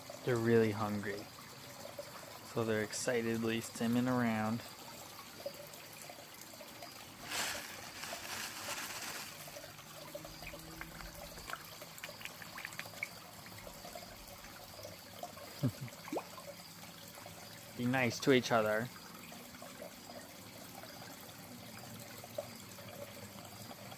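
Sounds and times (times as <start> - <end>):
pond water trickling: 0.0 - 23.9
fish splashing at surface: 7.0 - 13.2.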